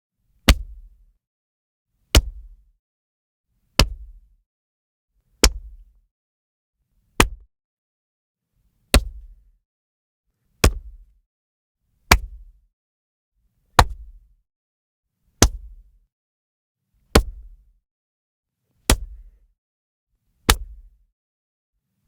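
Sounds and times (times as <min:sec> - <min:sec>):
body hit impacts: 0:10.6 - 0:11.0, 0:18.9 - 0:19.2, 0:20.5 - 0:20.9.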